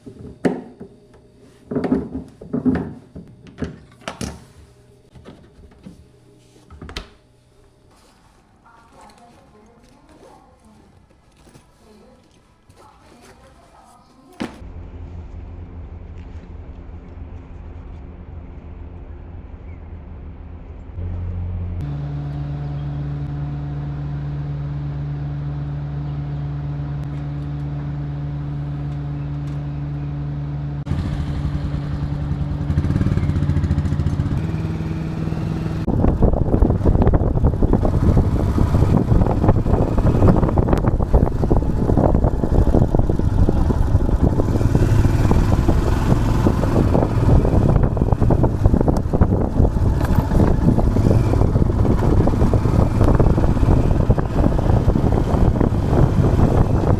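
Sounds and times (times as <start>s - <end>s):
vehicle engine running: 14.6s - 56.9s
wind rushing on microphone: 35.9s - 56.9s.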